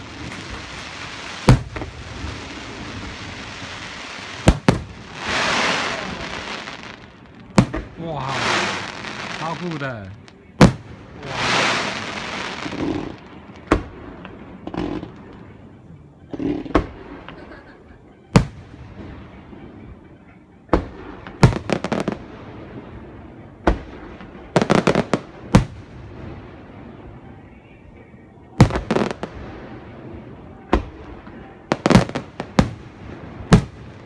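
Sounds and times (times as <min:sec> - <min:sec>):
rapid firework cracks: 0:00.0 - 0:06.9
firework rushing hiss: 0:00.0 - 0:09.9, 0:10.6 - 0:14.0
fireworks bangs: 0:00.0 - 0:15.5, 0:20.7 - 0:27.5, 0:28.6 - 0:34.0.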